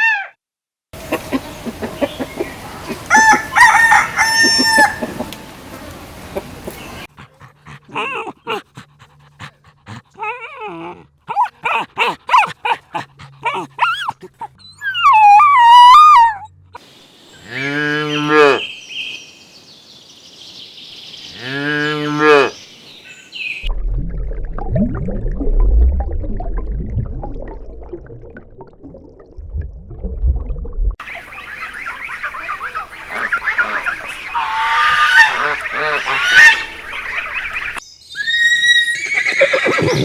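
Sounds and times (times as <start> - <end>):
cow mooing: 17.4 - 18.6, 21.4 - 22.5
low rumbling noise: 23.7 - 31.0.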